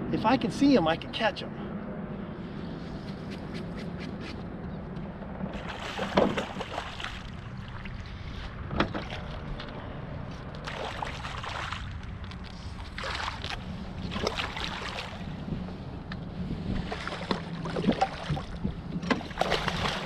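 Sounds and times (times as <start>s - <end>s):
boat engine humming: 0.0s - 20.0s
water splashing against hull: 5.5s - 9.7s, 10.6s - 15.8s, 16.6s - 20.0s.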